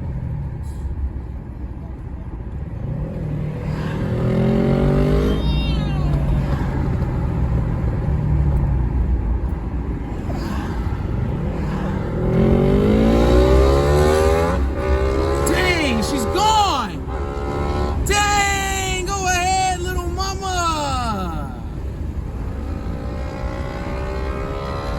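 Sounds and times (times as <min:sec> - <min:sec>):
motorcycle engine accelerating: 0:02.8 - 0:08.3, 0:10.6 - 0:18.1, 0:21.8 - 0:24.9.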